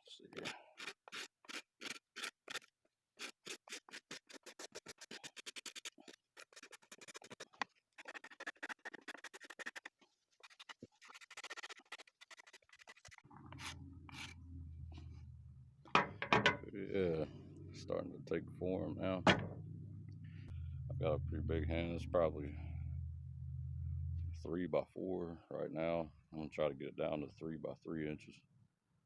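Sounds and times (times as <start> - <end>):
wood rasp scraping wood: 0.4 - 14.4
low steady hum: 13.3 - 24.9.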